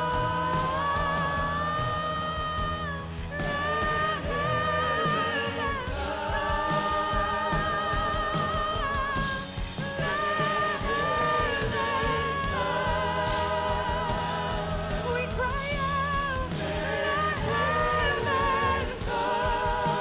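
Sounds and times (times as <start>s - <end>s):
band with bass and keyboard: 0.0s - 20.0s.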